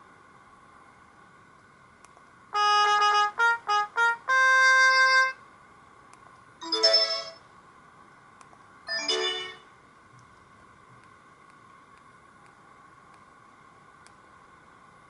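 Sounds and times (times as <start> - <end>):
another ringtone's notes: 6.6 - 7.4, 8.9 - 9.7
brass-like phone ringtone: 6.6 - 7.4.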